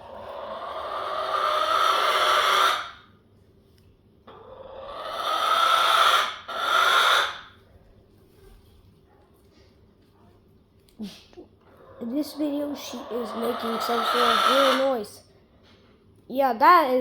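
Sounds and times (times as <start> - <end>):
hen rasping calls: 0.0 - 3.0, 4.3 - 7.5, 11.8 - 15.0.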